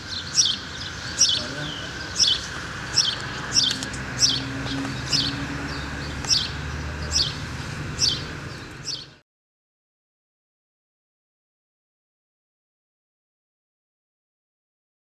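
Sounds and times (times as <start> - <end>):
bird chirping: 0.0 - 9.2.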